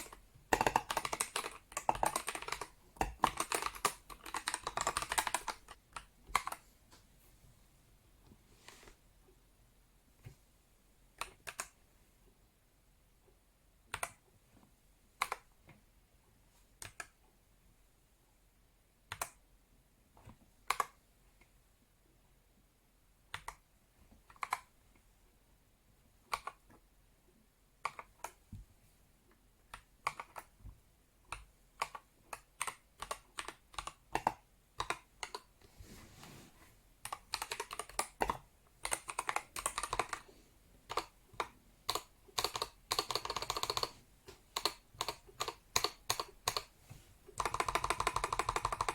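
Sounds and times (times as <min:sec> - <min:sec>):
mechanical keyboard typing: 0:00.0 - 0:06.7, 0:11.2 - 0:11.8, 0:15.2 - 0:15.5, 0:24.3 - 0:24.8, 0:29.7 - 0:30.6, 0:31.3 - 0:35.6, 0:37.0 - 0:48.9.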